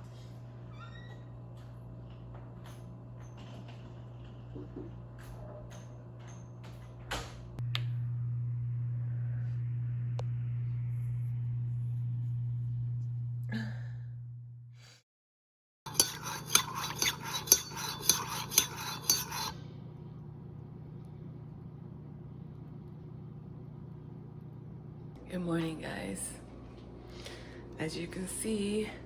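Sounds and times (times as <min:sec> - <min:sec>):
steady low hum: 0:07.3 - 0:15.0, 0:15.9 - 0:29.0
spoon clinking against cup: 0:15.9 - 0:19.5.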